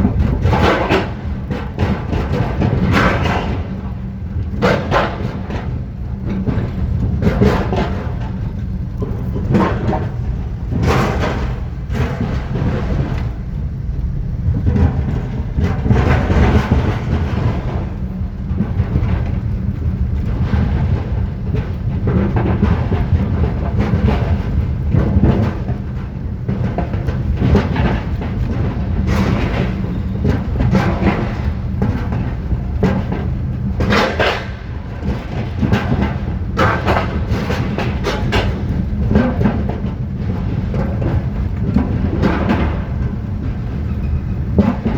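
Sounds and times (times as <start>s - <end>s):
vehicle low rumble: 3.6s - 25.0s.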